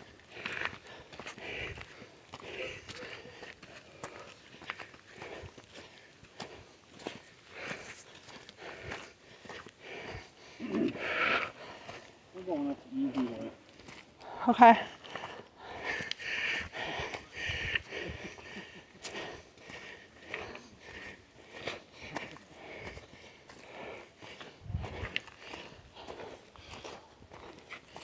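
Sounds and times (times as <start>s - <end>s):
person breathing hard: 0.0s - 12.4s, 14.2s - 28.0s
footsteps crunching on trail: 0.0s - 28.0s.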